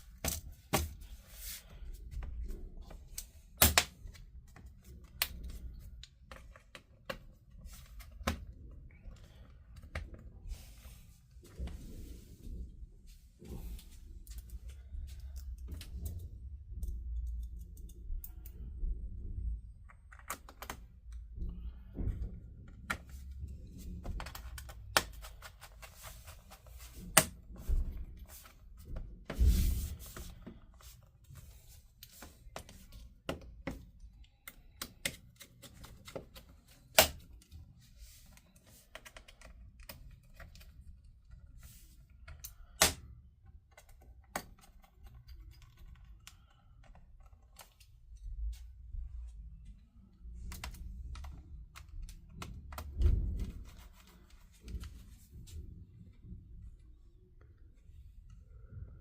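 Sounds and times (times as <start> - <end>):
laptop parts clicking and knocking: 2.4 - 10.2, 19.8 - 29.4, 32.0 - 37.6, 38.3 - 41.6, 42.2 - 48.5, 50.4 - 55.0.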